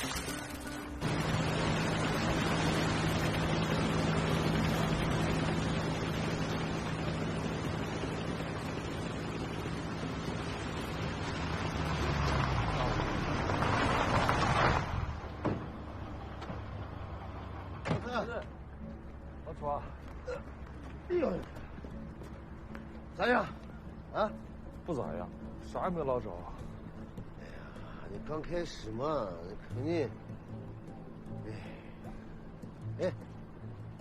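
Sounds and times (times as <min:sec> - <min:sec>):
water: 0:00.0 - 0:03.8
boat motor humming: 0:00.0 - 0:28.0.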